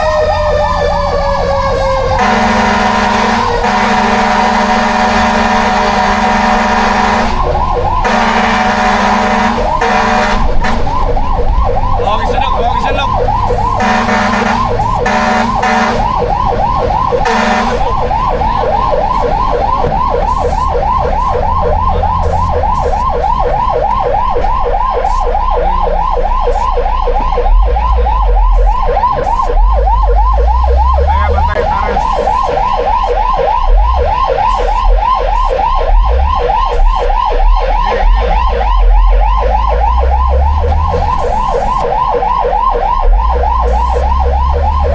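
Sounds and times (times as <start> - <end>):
fire truck siren yelping: 0.0 - 44.9
short noisy horn blasts: 2.2 - 7.4, 8.0 - 10.8, 13.8 - 16.1, 17.2 - 17.8
low rumble: 16.0 - 41.3.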